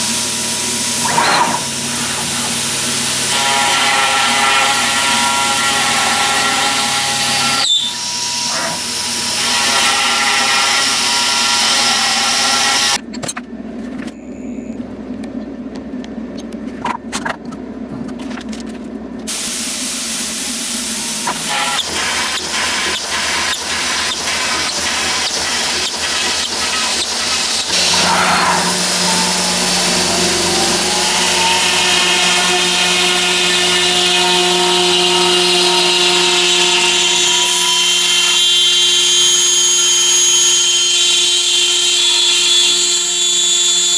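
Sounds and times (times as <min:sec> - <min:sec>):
stepper motors whining: 0:00.0 - 0:13.1, 0:20.6 - 0:43.9
hiss: 0:19.3 - 0:35.6.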